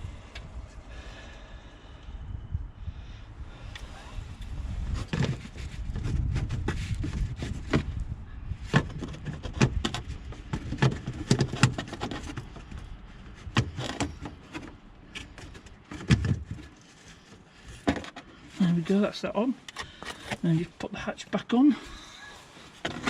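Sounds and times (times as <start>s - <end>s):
wind rumble on microphone: 0.0s - 14.5s.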